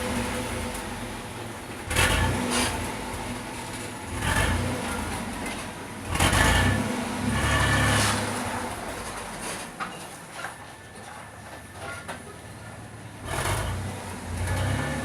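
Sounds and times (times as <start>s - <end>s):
engine revving: 1.9s - 3.3s, 4.1s - 5.4s, 6.0s - 8.8s, 13.2s - 15.0s.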